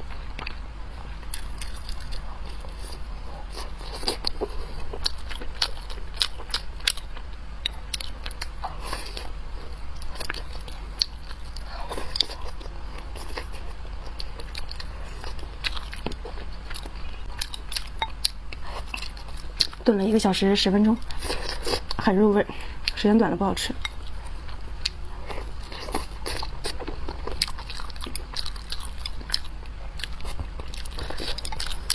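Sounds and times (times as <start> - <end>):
crunchy chewing: 0.0 - 19.9, 23.8 - 31.9.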